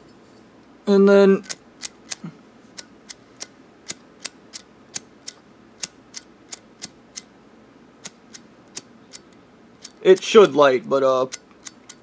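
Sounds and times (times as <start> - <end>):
lighter flint wheel clicking: 1.4 - 2.2, 2.8 - 7.3, 8.0 - 12.0.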